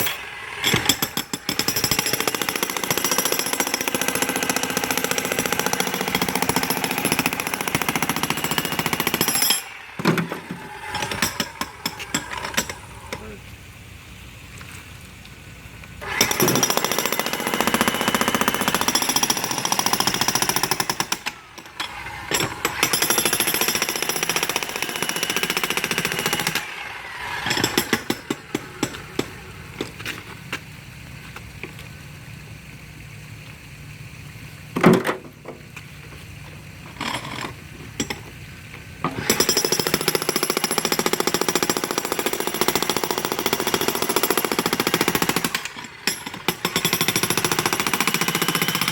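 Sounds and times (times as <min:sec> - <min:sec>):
jackhammer breaking concrete: 0:00.0 - 0:12.8, 0:16.0 - 0:29.4, 0:39.1 - 0:48.9.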